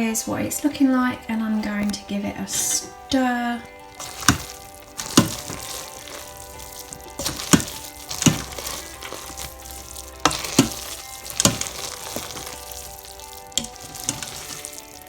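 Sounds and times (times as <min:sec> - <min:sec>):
spoon scraping wet rice: 0:03.9 - 0:15.0.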